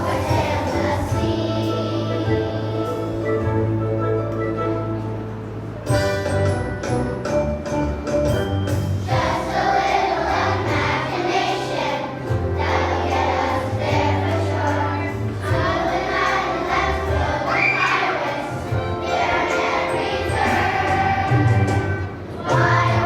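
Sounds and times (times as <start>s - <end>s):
children's choir singing: 0.0s - 4.3s, 9.0s - 23.0s
instrumental accompaniment: 0.0s - 23.0s.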